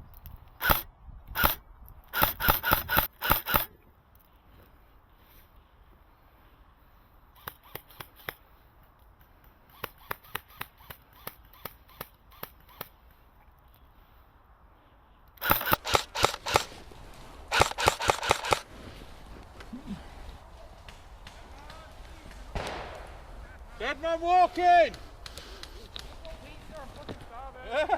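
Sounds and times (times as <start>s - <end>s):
airsoft gun shots: 0.6s - 1.6s, 2.2s - 3.7s, 15.4s - 16.8s, 17.5s - 18.6s, 22.5s - 23.1s
airsoft gun rapid bursts: 0.6s - 3.7s, 15.4s - 16.8s, 17.5s - 18.7s.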